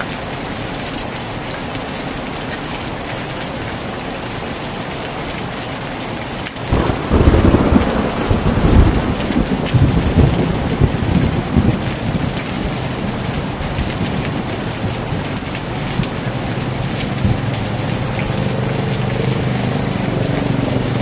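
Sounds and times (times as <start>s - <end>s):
heavy rain falling: 0.0s - 21.0s
thunder rumbling: 6.7s - 21.0s.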